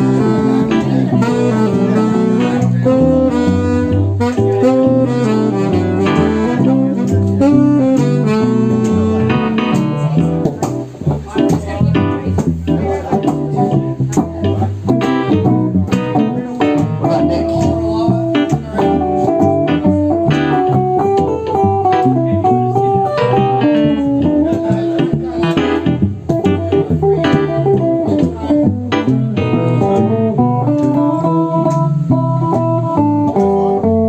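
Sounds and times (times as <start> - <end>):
guitar-like melodic notes: 0.0 - 34.0
live band playing: 0.0 - 34.0.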